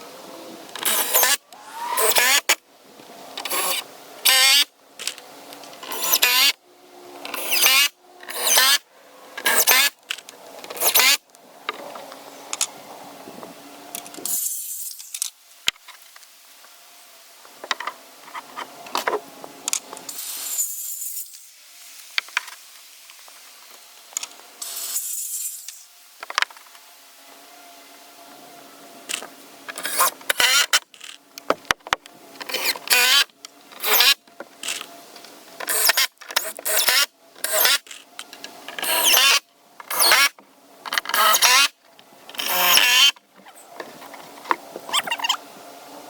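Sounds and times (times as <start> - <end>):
saw cutting through board: 0.8 - 2.6, 3.4 - 4.7, 5.8 - 6.6, 7.3 - 8.8, 9.4 - 10.0, 10.7 - 11.2, 29.7 - 30.8, 32.4 - 34.8, 35.6 - 38.0, 38.7 - 43.2
wood and tools clicking and knocking: 17.5 - 20.1, 26.2 - 26.8, 29.1 - 45.2.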